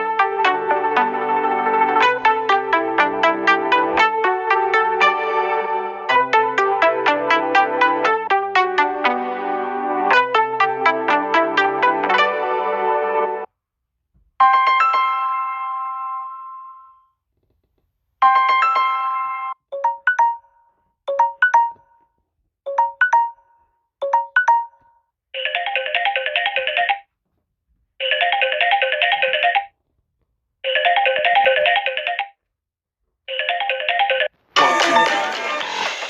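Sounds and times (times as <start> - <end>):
ringtone chiming chord: 18.2 - 20.5, 21.1 - 21.9, 22.7 - 24.8, 33.3 - 36.0.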